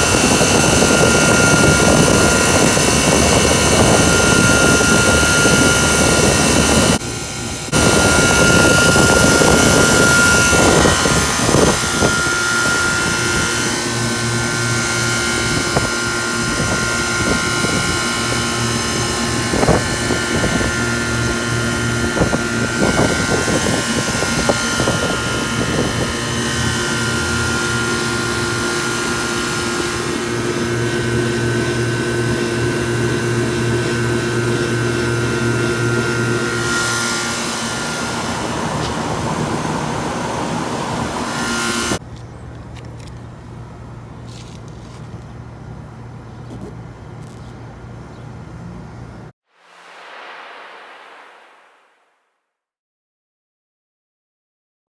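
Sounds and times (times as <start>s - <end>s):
hvac unit droning: 0.0s - 49.3s
loud airy rush: 49.6s - 52.0s.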